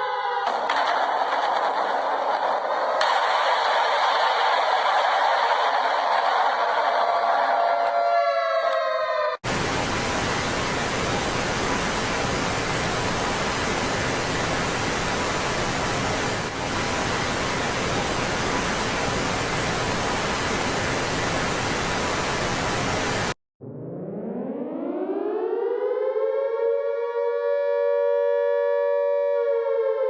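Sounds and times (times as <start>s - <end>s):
loud static hiss: 9.4s - 23.4s.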